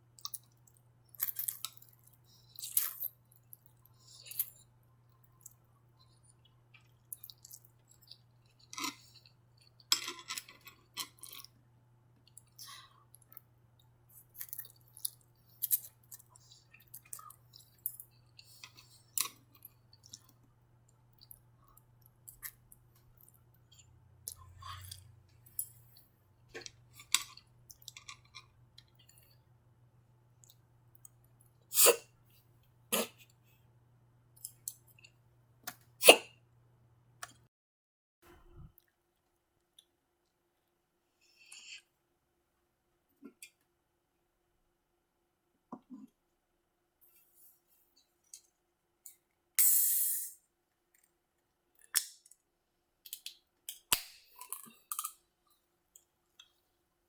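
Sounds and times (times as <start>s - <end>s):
wet chewing sounds: 0.2s - 11.6s.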